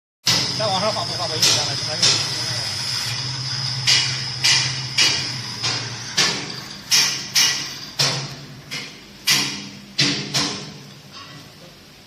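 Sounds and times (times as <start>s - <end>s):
sharp knocks: 3.8s - 10.8s.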